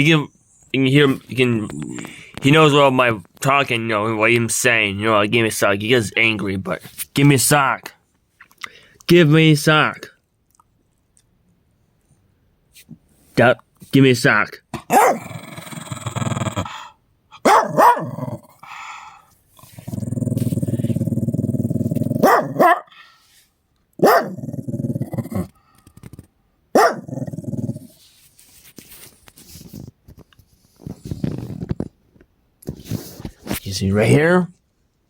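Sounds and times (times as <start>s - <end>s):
dog growling: 0.5s - 2.4s, 14.8s - 16.9s, 17.5s - 18.9s, 19.6s - 23.0s, 24.0s - 25.7s, 26.8s - 28.0s
dog barking: 14.9s - 15.3s, 17.4s - 18.4s, 22.2s - 23.0s, 24.0s - 24.4s, 26.8s - 27.2s.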